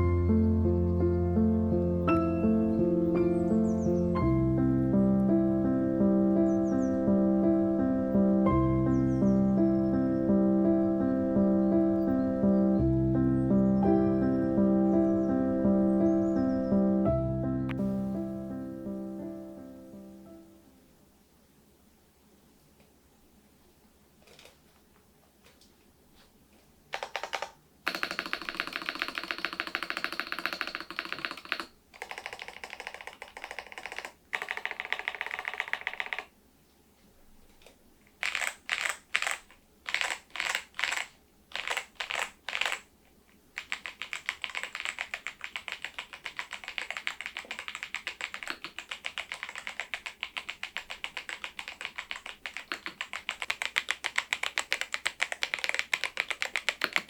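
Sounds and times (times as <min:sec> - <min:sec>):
typing on mechanical keyboard: 0:24.2 - 0:24.6, 0:26.9 - 0:36.3, 0:38.2 - 0:42.9, 0:43.5 - 0:57.0.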